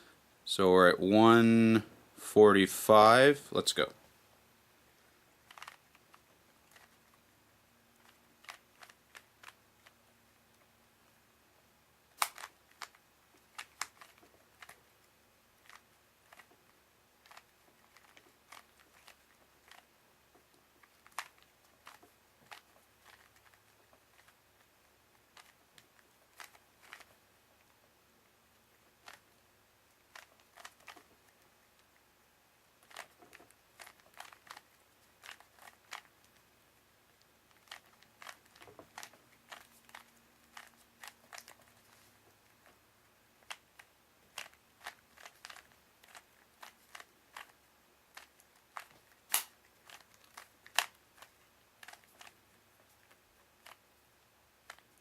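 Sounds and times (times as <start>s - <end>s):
plastic puzzle cube clicking: 5.5s - 7.0s, 8.0s - 10.0s, 12.2s - 14.8s, 15.6s - 16.5s, 17.2s - 19.9s, 20.8s - 23.6s, 25.3s - 27.1s, 30.1s - 31.1s, 32.8s - 36.4s, 37.5s - 41.9s, 43.4s - 52.4s, 53.6s - 53.8s, 54.6s - 55.0s.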